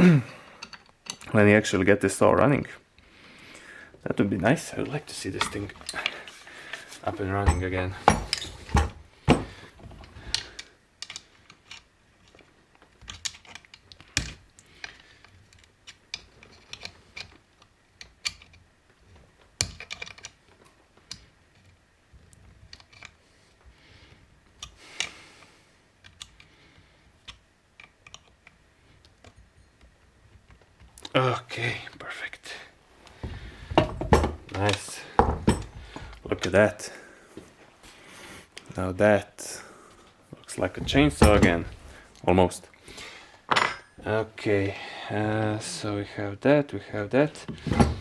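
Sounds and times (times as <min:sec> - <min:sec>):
metal parts clicking and tapping: 0:00.6 - 0:01.3, 0:07.4 - 0:17.4, 0:18.0 - 0:18.6, 0:19.6 - 0:21.7, 0:33.2 - 0:36.3
sharp knocks: 0:07.5 - 0:09.6.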